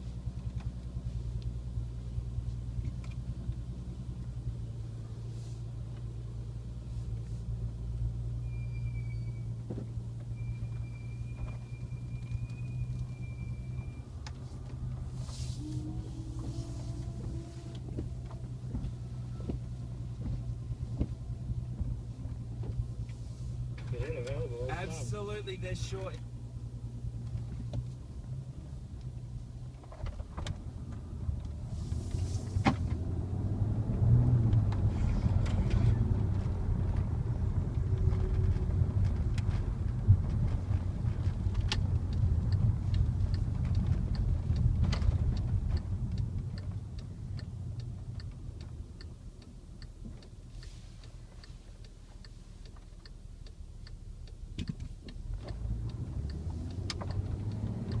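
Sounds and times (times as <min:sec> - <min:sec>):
car engine and exhaust rumble: 0:00.0 - 0:58.0
light ticks: 0:37.7 - 0:58.0.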